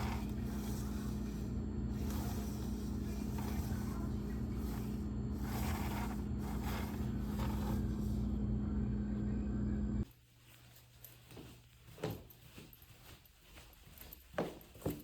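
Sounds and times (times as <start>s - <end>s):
low machine hum: 0.0s - 10.1s.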